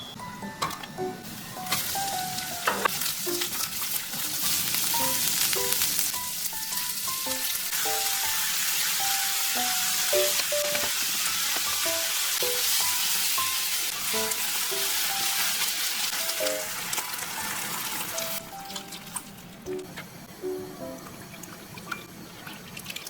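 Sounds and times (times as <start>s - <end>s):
plucked background music: 0.0s - 3.8s, 4.7s - 21.5s
food sizzling in a frying pan: 1.2s - 19.5s.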